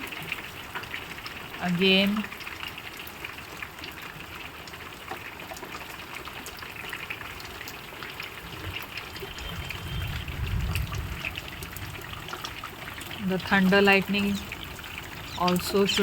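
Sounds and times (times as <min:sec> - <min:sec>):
rain falling: 0:00.0 - 0:16.0
water trickling: 0:00.0 - 0:16.0
low rumble: 0:09.4 - 0:12.2.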